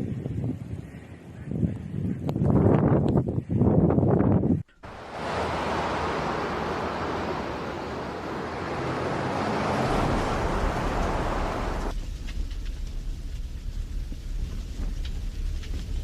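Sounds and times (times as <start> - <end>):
blizzard wind rushing: 0.0 - 11.9
wind buffeting microphone: 0.0 - 11.9.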